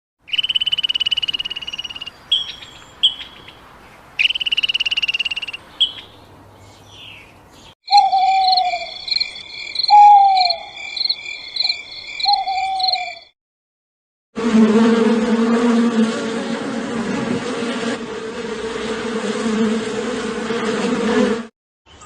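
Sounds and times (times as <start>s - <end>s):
steady high chirping: 0.3s - 3.6s, 4.2s - 6.2s, 7.9s - 13.3s
falling hoot-like calls: 7.9s - 9.1s, 9.8s - 10.8s, 12.2s - 13.3s
high pulsed animal trills: 7.9s - 13.3s.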